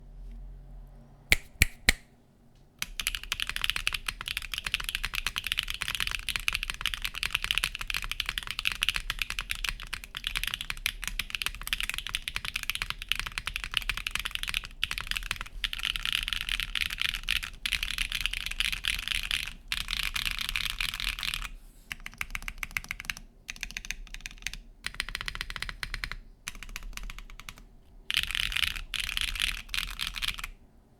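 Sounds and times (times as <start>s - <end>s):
sharp clicks: 1.3s - 2.1s
mechanical keyboard typing: 2.8s - 30.6s.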